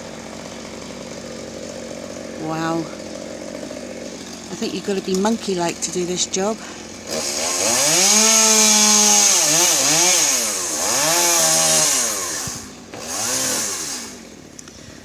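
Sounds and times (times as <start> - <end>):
chainsaw revving while cutting: 0.0 - 14.3.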